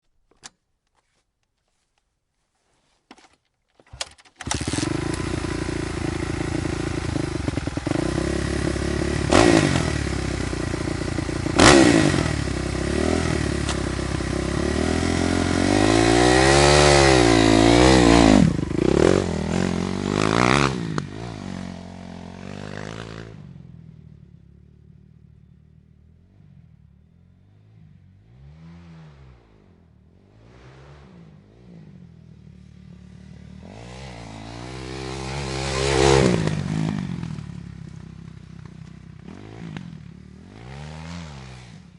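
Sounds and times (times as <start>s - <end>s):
starter clicks: 3.1s - 5.3s
motorcycle engine revving: 4.4s - 41.9s.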